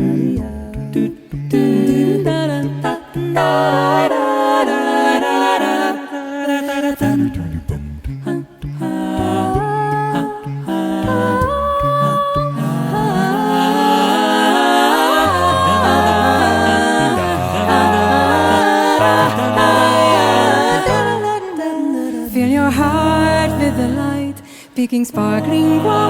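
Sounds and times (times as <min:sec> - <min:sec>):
a cappella voices singing: 0:00.0 - 0:26.0
sung bass line: 0:07.0 - 0:13.4, 0:15.1 - 0:21.4, 0:22.4 - 0:24.4.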